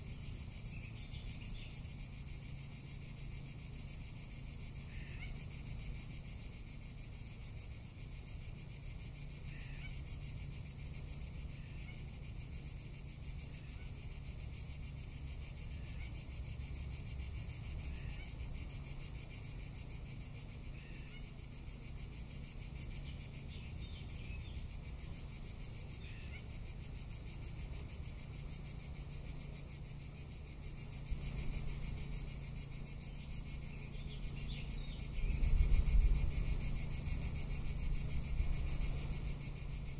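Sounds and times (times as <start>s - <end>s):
cicadas buzzing: 0.0s - 39.9s.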